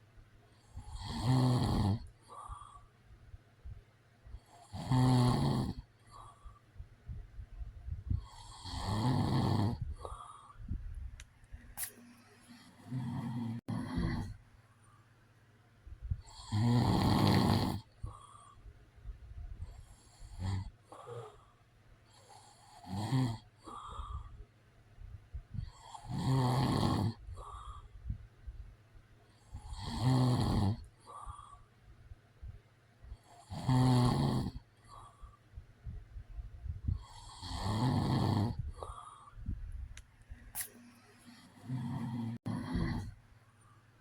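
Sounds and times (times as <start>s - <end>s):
man snoring: 0.7s - 2.8s, 4.4s - 6.4s, 8.2s - 10.6s, 12.6s - 14.4s, 16.2s - 18.5s, 19.9s - 21.5s, 22.2s - 24.3s, 25.6s - 27.8s, 29.4s - 31.6s, 33.3s - 35.1s, 37.0s - 39.2s, 41.5s - 43.2s
soft breaths: 2.0s - 4.8s, 5.7s - 8.9s, 9.7s - 16.6s, 17.8s - 22.8s, 23.5s - 26.1s, 27.1s - 29.8s, 30.8s - 33.4s, 34.6s - 37.5s, 38.4s - 44.0s.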